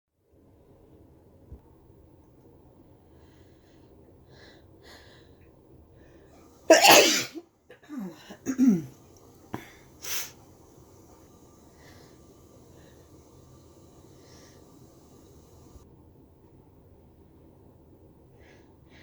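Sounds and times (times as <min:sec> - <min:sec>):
person breathing: 0:03.1 - 0:06.4, 0:11.6 - 0:15.2
person sneezing: 0:06.7 - 0:08.9.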